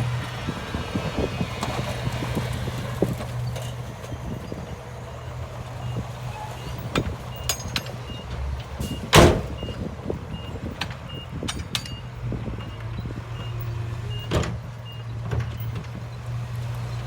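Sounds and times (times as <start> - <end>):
diesel earthmoving machinery running: 0.0 - 17.0
metallic clanks: 6.9 - 9.7, 10.8 - 12.1.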